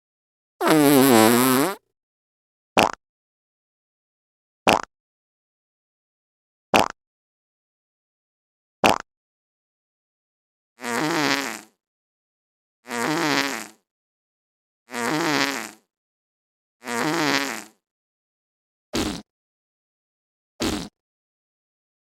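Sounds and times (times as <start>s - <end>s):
long fluttering fart: 0.6s - 1.8s
short sharp fart: 0.6s - 1.8s, 19.0s - 19.3s, 20.6s - 21.0s.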